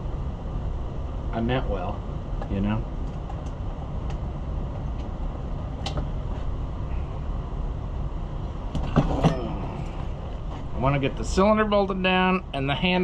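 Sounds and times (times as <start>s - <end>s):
low machinery rumble: 0.0s - 13.0s.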